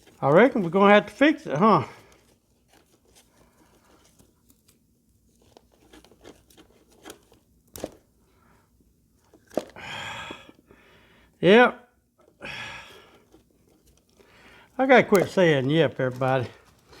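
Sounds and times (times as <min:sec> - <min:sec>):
faint clicks of parts handled: 0:15.0 - 0:17.0.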